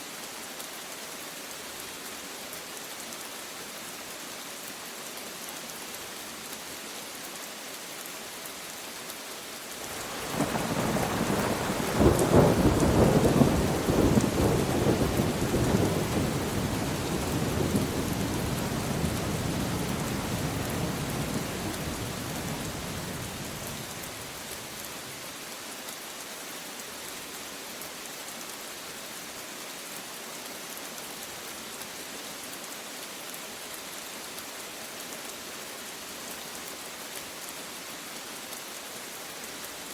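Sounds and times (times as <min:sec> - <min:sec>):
steady rain: 0:00.0 - 0:39.9
rolling thunder: 0:10.2 - 0:23.6.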